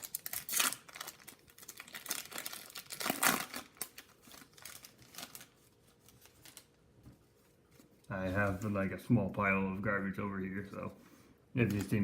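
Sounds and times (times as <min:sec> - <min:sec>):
foil wrapper crinkling and tearing: 0:00.0 - 0:06.9.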